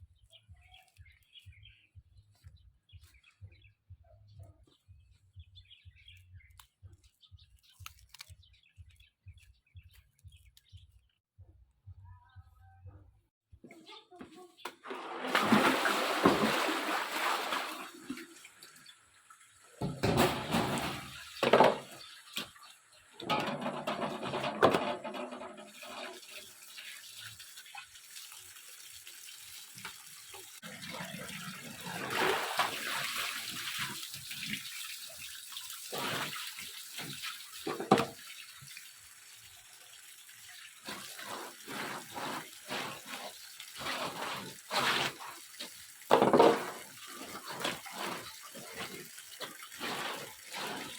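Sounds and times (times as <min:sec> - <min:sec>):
water splashing in a sink: 0:14.7 - 0:50.9.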